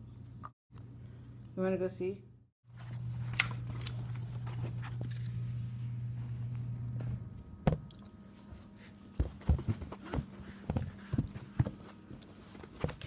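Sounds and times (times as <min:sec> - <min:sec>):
low machine hum: 0:00.0 - 0:13.0
footsteps: 0:09.2 - 0:13.0.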